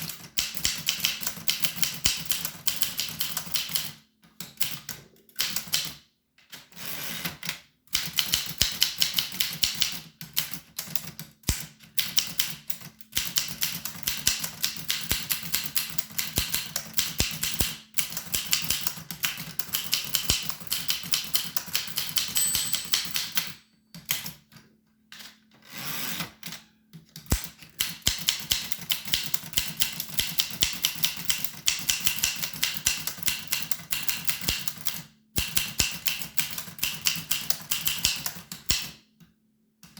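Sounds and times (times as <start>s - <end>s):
typewriter keystroke clacks: 0.0s - 3.9s, 8.0s - 23.5s, 27.2s - 38.9s.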